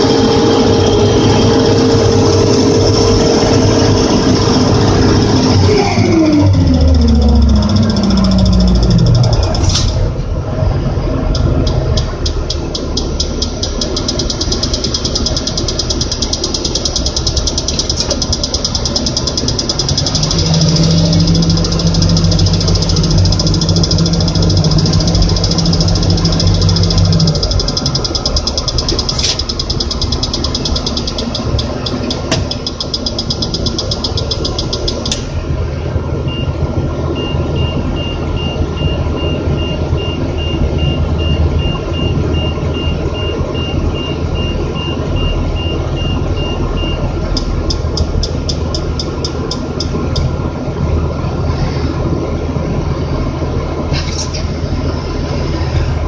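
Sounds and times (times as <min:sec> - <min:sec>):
crane engine running: 0:00.0 - 0:56.0
high warning beeps: 0:05.2 - 0:09.7, 0:11.4 - 0:35.2, 0:37.2 - 0:50.3
fast ticking: 0:06.3 - 0:09.8, 0:11.3 - 0:35.2, 0:47.3 - 0:50.4.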